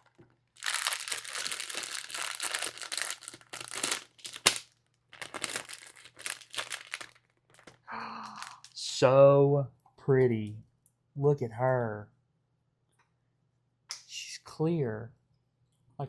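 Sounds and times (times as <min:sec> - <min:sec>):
plastic wrapping crinkling: 0:00.0 - 0:08.7.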